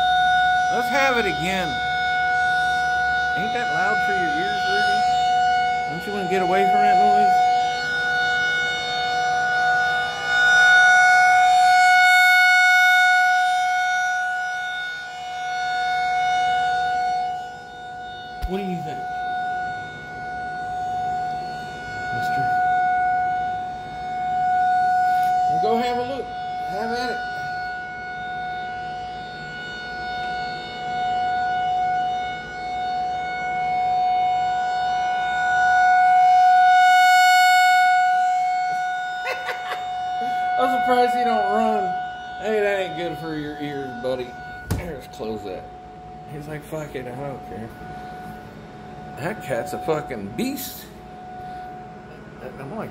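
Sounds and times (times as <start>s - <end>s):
warning siren steady tone: 0.0s - 52.9s.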